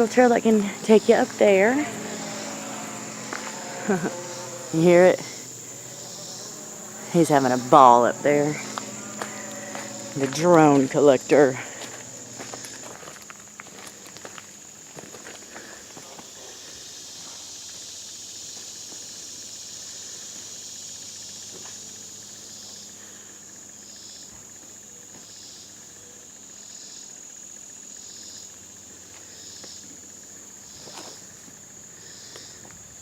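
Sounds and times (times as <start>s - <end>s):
short cricket chirps: 0.0s - 13.6s
crickets trilling: 0.0s - 33.0s.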